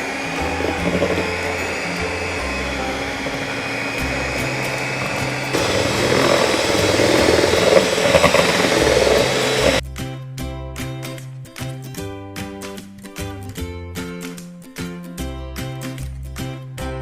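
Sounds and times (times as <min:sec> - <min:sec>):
electric mixer running: 0:00.0 - 0:09.8.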